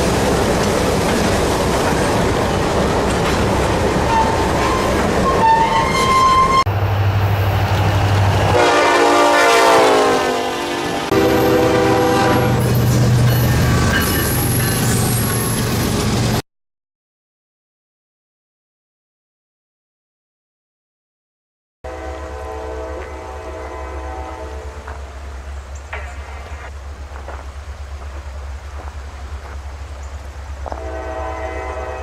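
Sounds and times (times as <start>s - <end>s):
freight train rumbling past: 0.0s - 16.4s, 21.9s - 32.0s
locomotive horn: 4.1s - 6.8s, 8.4s - 12.8s, 21.8s - 25.2s, 30.7s - 32.0s
engine hum: 24.3s - 32.0s.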